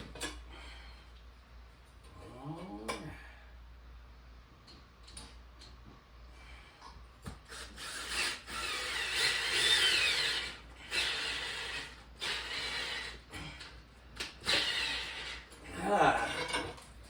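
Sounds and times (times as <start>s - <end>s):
cordless drill driving screws: 7.5s - 13.3s, 14.2s - 15.5s.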